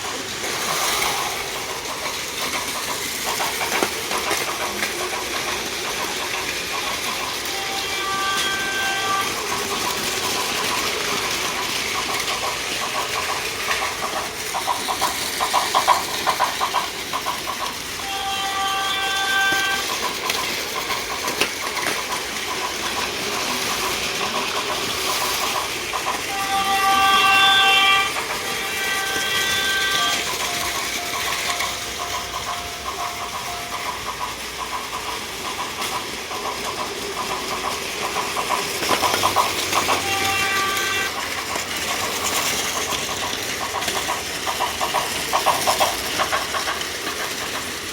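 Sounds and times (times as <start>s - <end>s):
electronic train running sounds: 0.0s - 47.9s
toy train motors whirring: 0.0s - 47.9s
wheels clicking over track joints: 0.0s - 47.9s
short horn-like tones: 7.5s - 9.3s, 18.0s - 19.8s, 26.3s - 30.2s, 40.0s - 41.1s.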